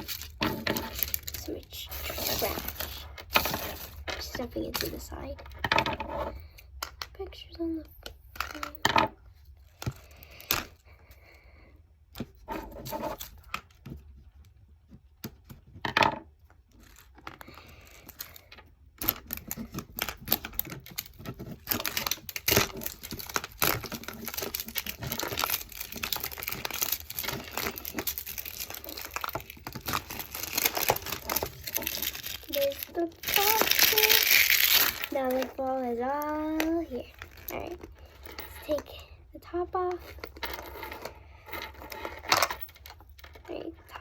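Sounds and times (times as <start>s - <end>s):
plastic wrapping crinkling: 0.0s - 5.1s, 16.7s - 38.8s.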